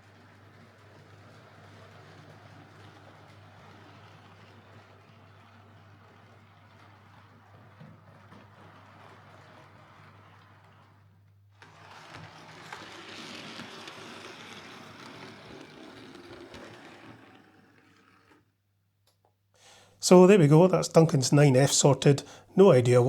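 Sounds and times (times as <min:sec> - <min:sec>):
model train motor whirring: 0:00.0 - 0:11.0, 0:11.6 - 0:18.5.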